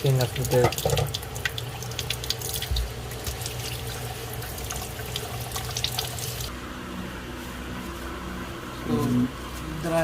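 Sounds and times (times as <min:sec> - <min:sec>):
tap water running into sink: 0:00.0 - 0:06.5.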